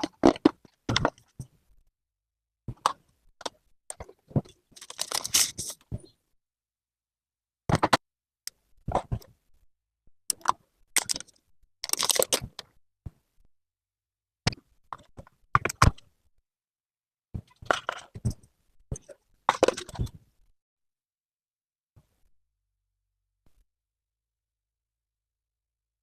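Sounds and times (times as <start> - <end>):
cardboard and plastic rustling: 4.3 - 5.8.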